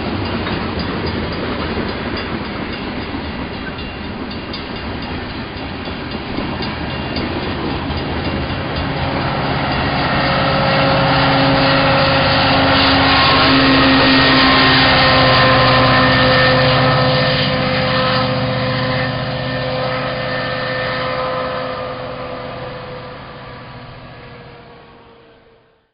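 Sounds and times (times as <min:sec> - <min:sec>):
diesel locomotives passing: 0:00.0 - 0:25.9
locomotive held horn tones: 0:08.0 - 0:25.9.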